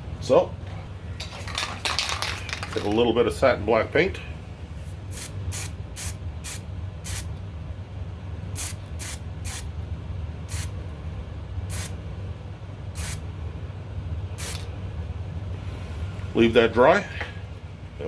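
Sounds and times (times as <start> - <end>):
spray paint can hissing: 5.1 - 7.3, 8.6 - 9.7, 11.7 - 11.9, 13.0 - 13.2, 14.4 - 14.6.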